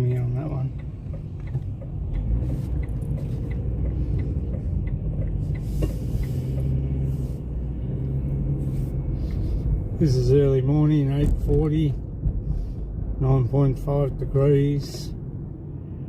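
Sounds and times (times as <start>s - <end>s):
car engine and tyre rumble: 0.0s - 16.0s.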